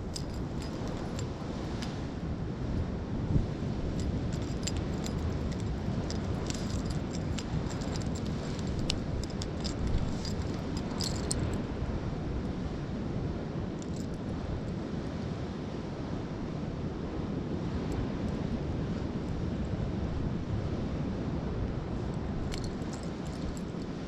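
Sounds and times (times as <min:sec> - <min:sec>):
clothing clinking and rustling: 0:00.0 - 0:02.0, 0:03.9 - 0:11.7, 0:13.8 - 0:14.3, 0:22.4 - 0:24.0
wind and surf rumble: 0:00.0 - 0:24.0.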